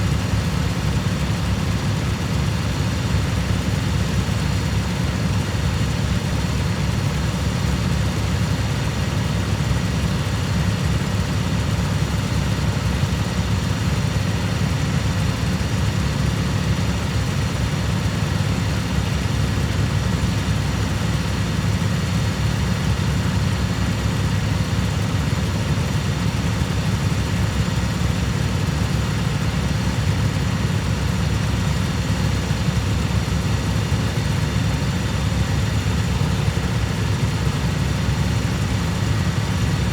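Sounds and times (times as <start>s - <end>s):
lawn tractor engine running: 0.0s - 39.9s.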